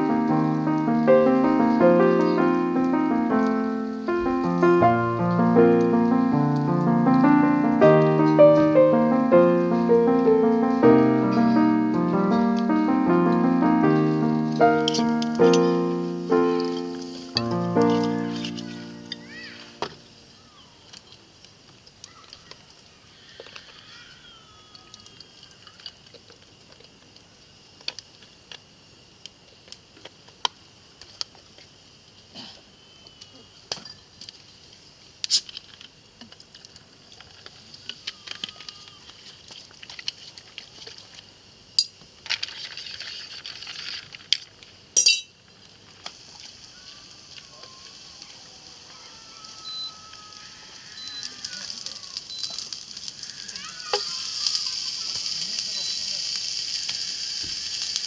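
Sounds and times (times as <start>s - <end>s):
food sizzling in a pan: 0.0s - 26.7s, 44.6s - 58.0s
faint high hiss: 0.0s - 58.0s.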